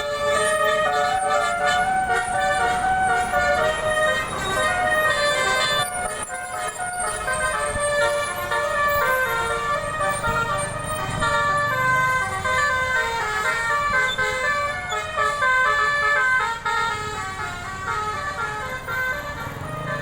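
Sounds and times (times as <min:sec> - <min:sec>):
musical air horn playing tune: 0:00.0 - 0:11.5.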